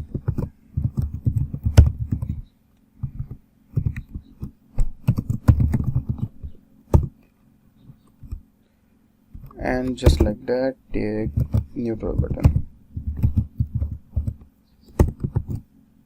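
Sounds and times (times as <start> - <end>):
typing on computer keyboard: 0.0 - 2.4, 3.2 - 6.4, 11.2 - 15.6
faint steady hum: 0.0 - 16.0.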